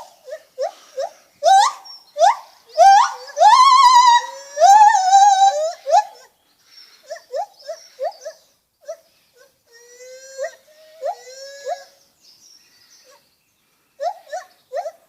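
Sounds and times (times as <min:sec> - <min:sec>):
gibbon calling: 0:00.0 - 0:06.3.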